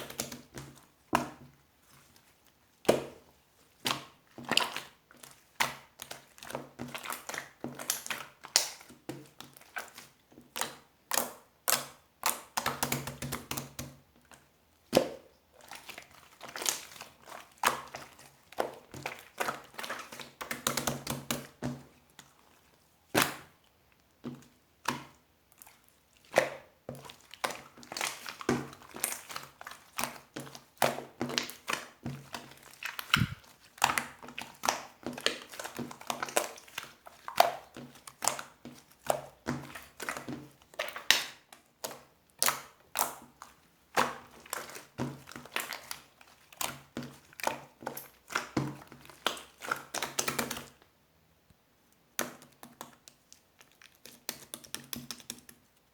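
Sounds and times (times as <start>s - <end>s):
slime squeezed by hand: 33.0s - 33.4s.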